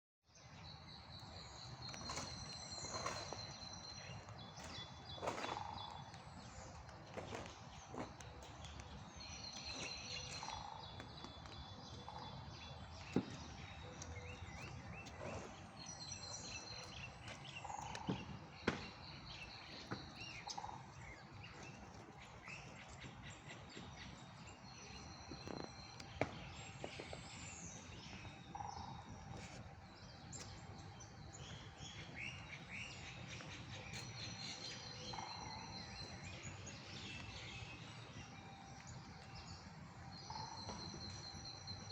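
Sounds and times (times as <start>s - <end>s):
songbirds singing: 0.3s - 41.9s
woodpecker tapping on wood: 17.5s - 19.0s.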